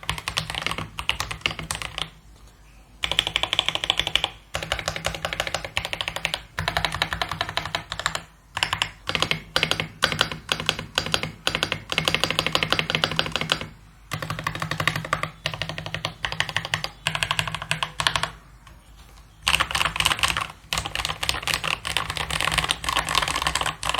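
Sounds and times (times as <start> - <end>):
mechanical keyboard typing: 0.0 - 23.9.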